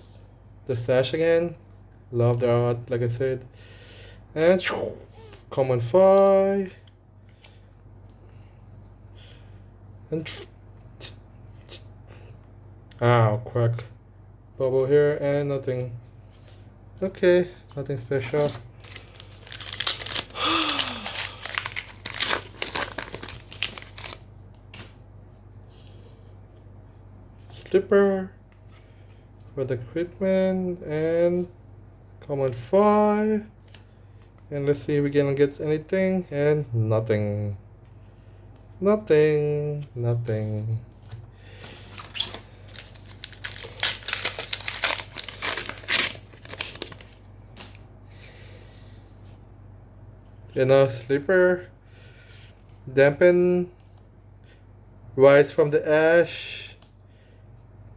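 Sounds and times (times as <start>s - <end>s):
wrapper crinkling and tearing: 18.3s - 24.3s, 41.8s - 47.8s.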